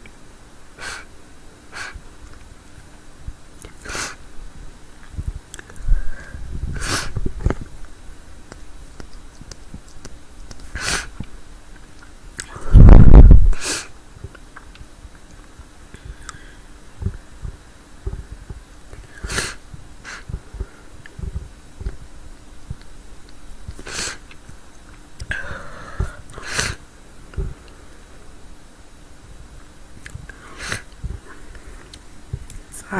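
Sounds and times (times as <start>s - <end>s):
woman breathing sharply: 5.8s - 7.2s, 25.3s - 26.8s.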